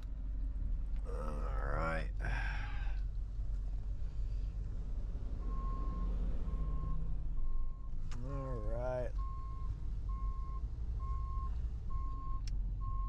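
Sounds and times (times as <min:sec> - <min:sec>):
truck engine rumble: 0:00.0 - 0:13.0
reversing alarm beeping: 0:05.4 - 0:13.0.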